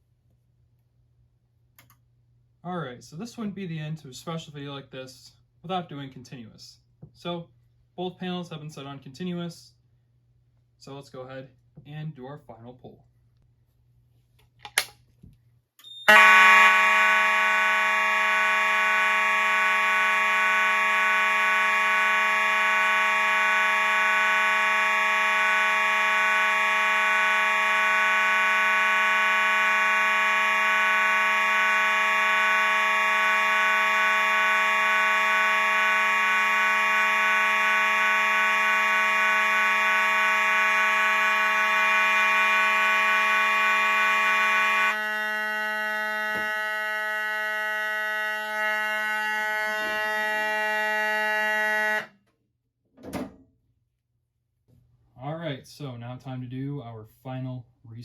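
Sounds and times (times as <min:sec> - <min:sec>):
fire alarm horns buzzing: 0:15.8 - 0:52.3.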